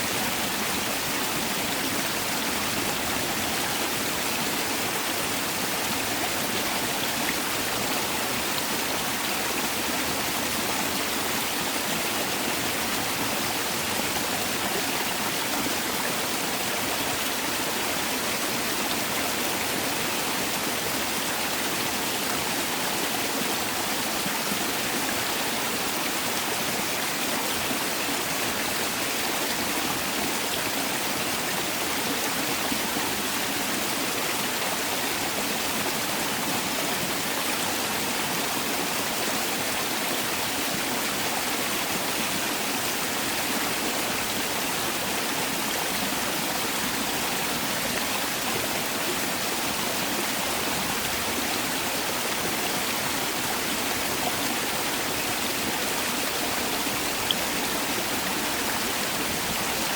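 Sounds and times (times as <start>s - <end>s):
stream rushing over rocks: 0.0s - 59.9s.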